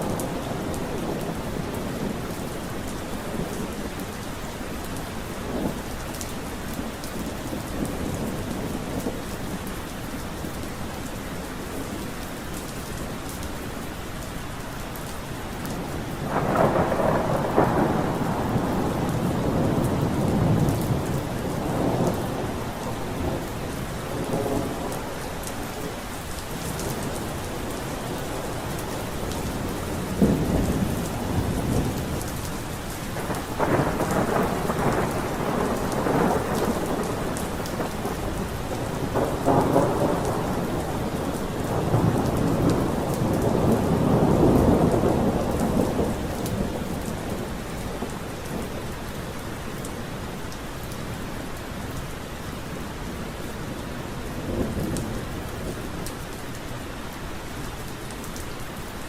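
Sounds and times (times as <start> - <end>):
steady rain: 0.0 - 59.0
thunder rumbling: 15.7 - 50.4.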